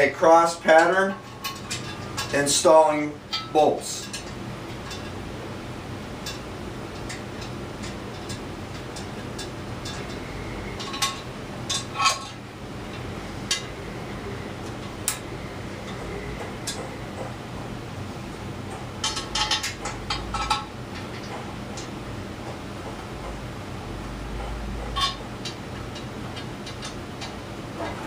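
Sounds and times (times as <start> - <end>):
steady low hum: 0.0 - 28.0
metal bolts clinking: 25.0 - 28.0.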